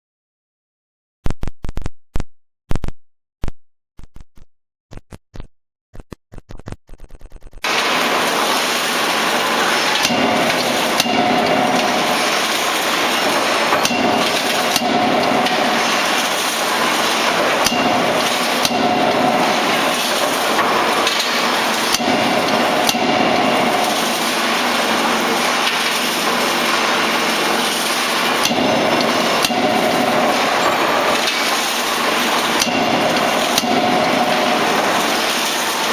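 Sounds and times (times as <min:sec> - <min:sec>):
forging hammer blows: 0:07.6 - 0:35.9
workshop and hydraulic noise: 0:07.6 - 0:35.9.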